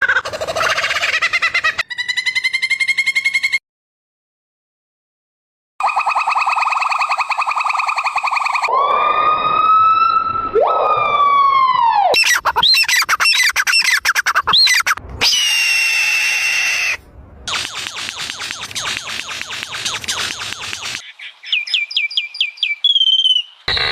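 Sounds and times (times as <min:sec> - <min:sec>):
quick chirps and looping whistles: 0:05.8 - 0:08.7, 0:12.2 - 0:15.0, 0:17.5 - 0:23.9
long wailing calls: 0:12.2 - 0:17.0
held whistle: 0:22.2 - 0:23.9.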